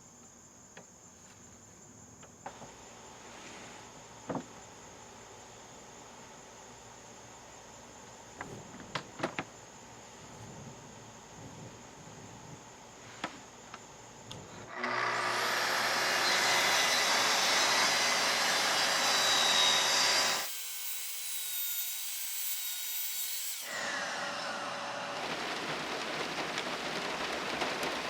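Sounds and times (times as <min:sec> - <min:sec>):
saw cutting through plywood: 0:14.7 - 0:25.6.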